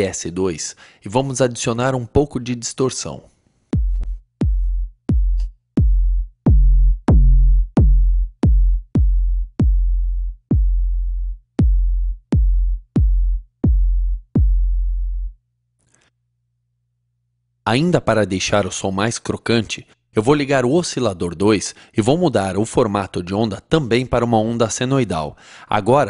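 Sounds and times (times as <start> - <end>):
synthesized kick drum hits: 3.8 - 15.3.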